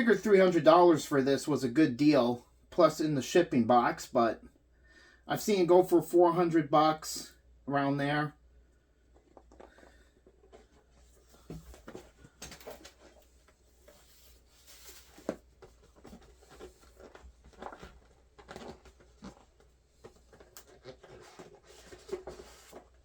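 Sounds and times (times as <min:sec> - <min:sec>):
packaging taps and rustles: 0:14.9 - 0:23.0.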